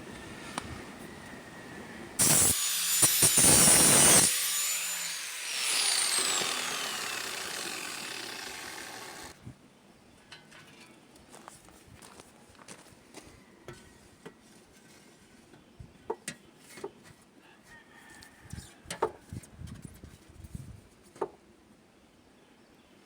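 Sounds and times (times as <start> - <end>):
power tool running: 2.2 - 9.4
power tool winding down: 2.2 - 9.4.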